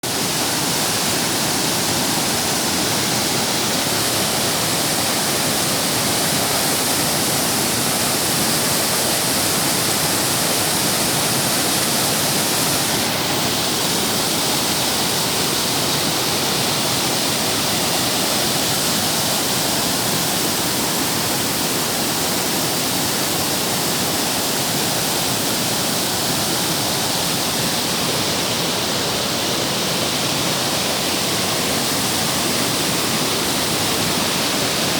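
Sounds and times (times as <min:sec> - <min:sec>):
rushing water roar: 0:00.0 - 0:34.9.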